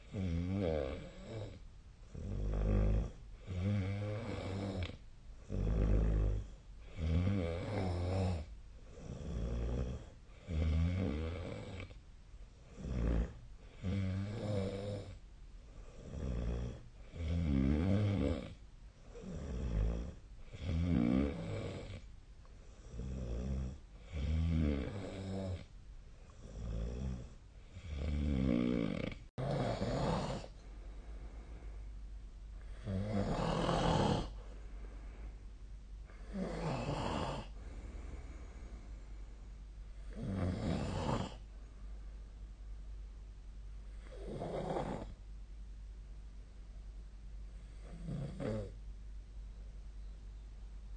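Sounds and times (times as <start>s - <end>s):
person snoring: 0.0s - 12.0s, 12.6s - 15.2s, 15.8s - 22.1s, 22.8s - 25.7s, 26.4s - 30.6s, 32.6s - 34.4s, 36.1s - 38.9s, 40.0s - 41.5s, 44.0s - 45.2s, 47.6s - 48.8s.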